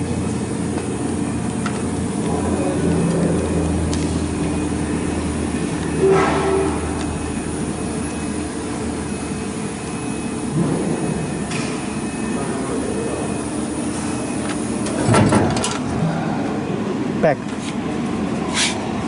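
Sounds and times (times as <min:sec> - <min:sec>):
cnc router rumble: 0:00.0 - 0:19.0
faint steady whine: 0:00.0 - 0:19.0
loud mechanical clatter: 0:14.8 - 0:16.0.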